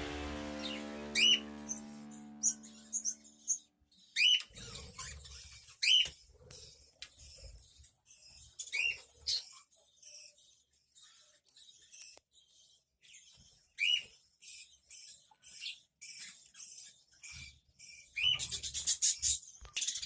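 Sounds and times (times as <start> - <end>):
lingering musical tone: 0.0 - 3.6
budgerigars chirping: 0.0 - 20.0.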